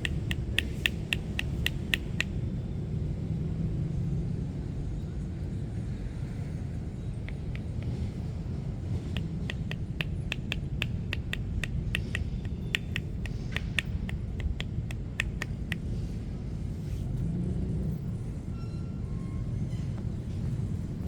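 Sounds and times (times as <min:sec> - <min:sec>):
hands slapping on body: 0:00.0 - 0:02.3, 0:07.3 - 0:08.0, 0:09.1 - 0:15.9
street traffic rumble: 0:00.0 - 0:21.0.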